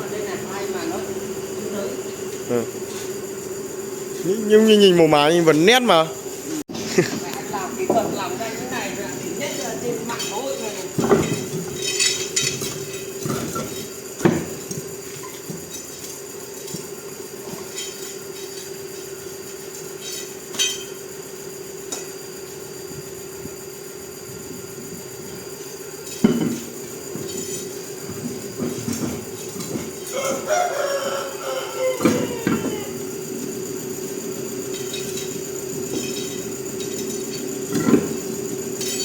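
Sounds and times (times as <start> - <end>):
steady droning hum: 0.0 - 19.4
metallic clinks and knocks: 9.5 - 21.0, 34.6 - 39.0.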